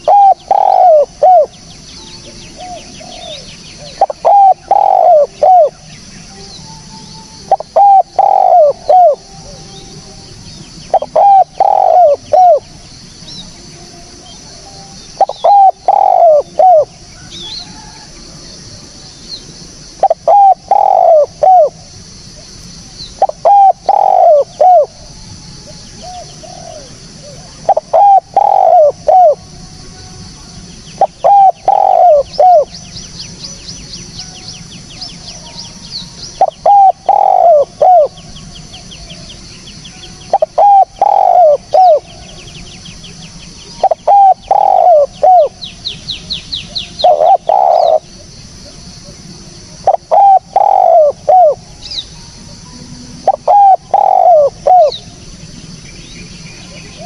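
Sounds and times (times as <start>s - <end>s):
dove cooing: 0.0s - 5.9s, 6.5s - 19.1s, 20.0s - 29.5s, 31.0s - 32.8s, 35.4s - 39.4s, 40.1s - 42.6s, 43.7s - 45.7s, 46.7s - 55.4s, 56.6s - 57.0s
small bird trilling: 35.5s - 38.2s, 43.7s - 45.7s, 46.6s - 48.0s, 53.2s - 55.1s.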